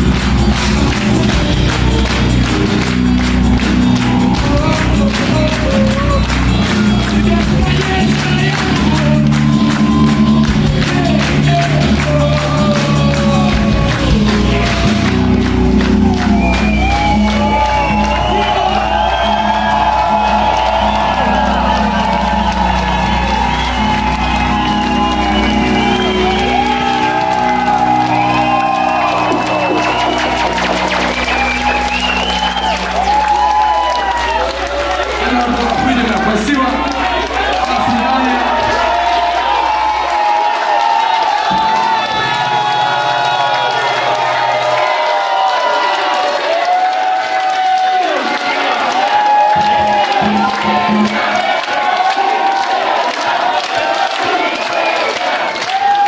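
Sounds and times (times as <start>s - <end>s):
drum beat: 0.0s - 39.0s
rock band playing live: 0.0s - 39.9s
deep bass: 0.0s - 40.1s.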